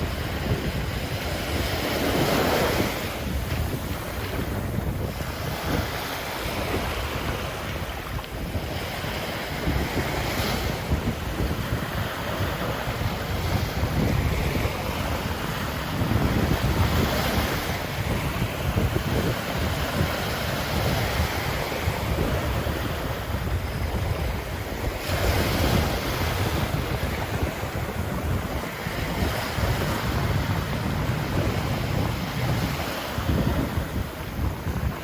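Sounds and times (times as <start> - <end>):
ocean surf breaking on beach: 0.0 - 35.0.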